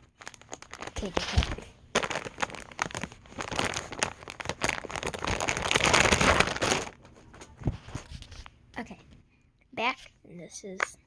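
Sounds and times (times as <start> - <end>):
bag crinkling and rustling: 0.0 - 8.5.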